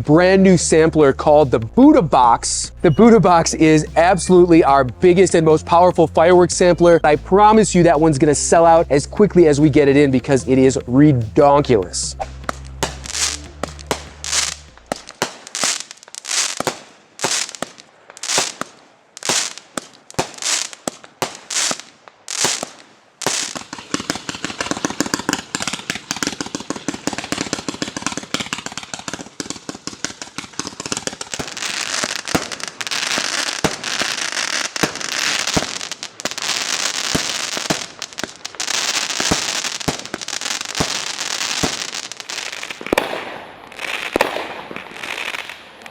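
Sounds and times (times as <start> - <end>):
fireworks crackling: 0.0 - 45.9
fireworks bangs: 7.1 - 45.9.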